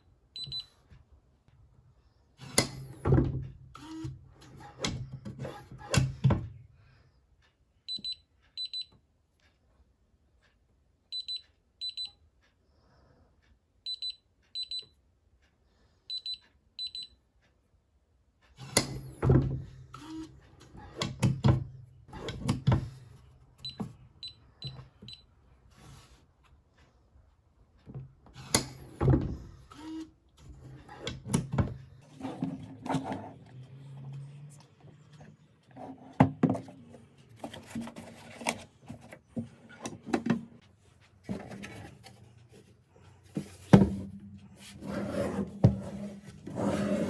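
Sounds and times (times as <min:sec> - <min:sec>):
safe clunking and knocking: 0:30.5 - 0:32.0.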